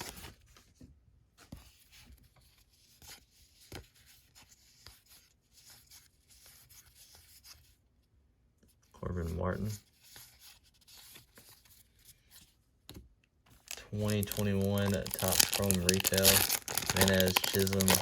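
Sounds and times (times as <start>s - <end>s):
cards being flipped by hand: 10.0s - 18.0s.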